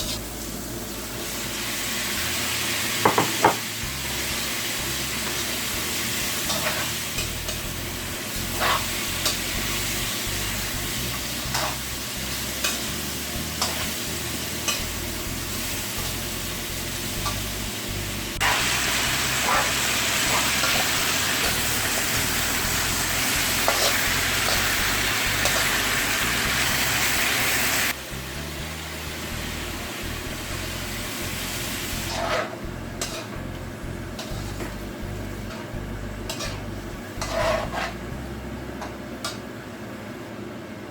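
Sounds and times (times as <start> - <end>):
meat sizzling in a pan: 0.0 - 28.0, 28.9 - 33.2.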